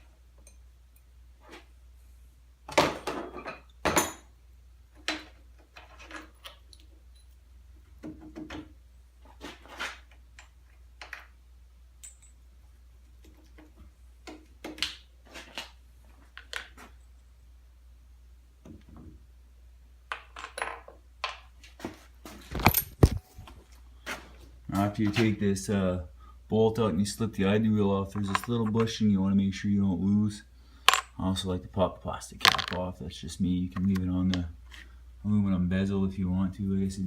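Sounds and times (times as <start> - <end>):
hand tools and metal clinking: 5.0 - 7.5, 12.0 - 12.4, 22.2 - 25.3, 28.1 - 28.9.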